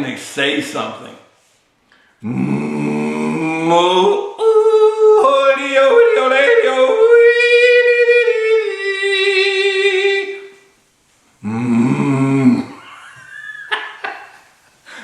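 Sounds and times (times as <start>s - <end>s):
man yodeling: 2.2s - 10.6s.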